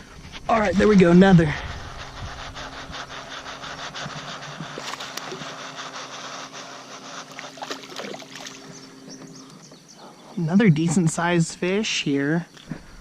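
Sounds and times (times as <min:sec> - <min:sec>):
fish splashing water: 0:07.3 - 0:08.6.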